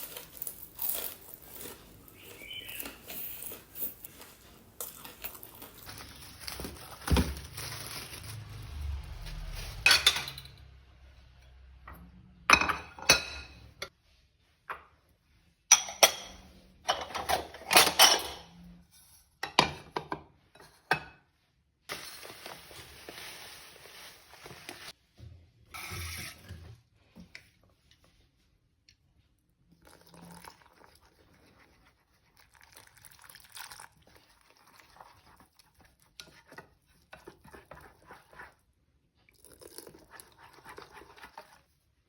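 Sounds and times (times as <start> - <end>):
dishes and cutlery clinking: 15.7 - 21.3.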